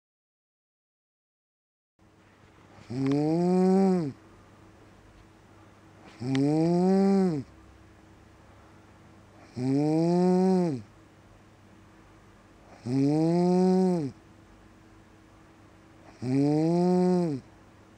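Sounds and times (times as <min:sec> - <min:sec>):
cat snoring: 0:02.8 - 0:04.2, 0:06.0 - 0:07.5, 0:09.4 - 0:10.9, 0:12.6 - 0:14.2, 0:16.0 - 0:17.5.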